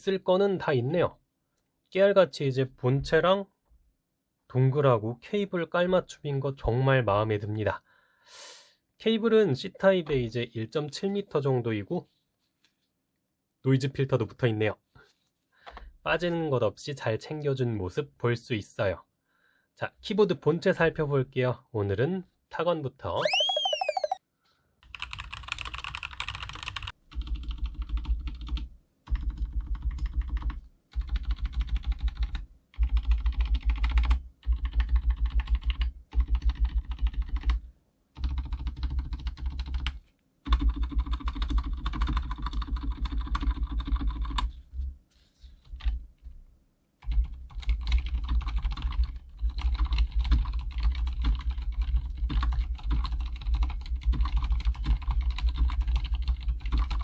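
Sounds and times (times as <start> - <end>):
typing on mechanical keyboard: 25.1 - 28.6, 29.2 - 37.5, 40.5 - 44.4, 47.0 - 57.0.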